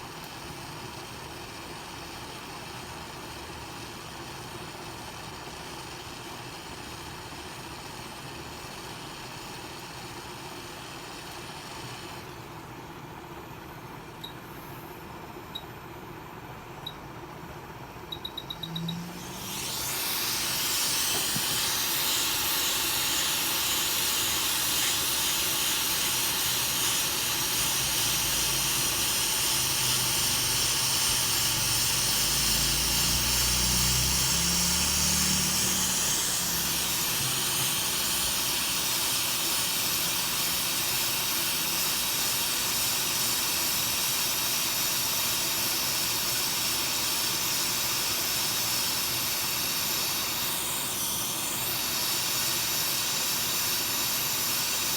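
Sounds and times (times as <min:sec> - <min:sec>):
hiss of blowing air: 0:19.0 - 0:54.9.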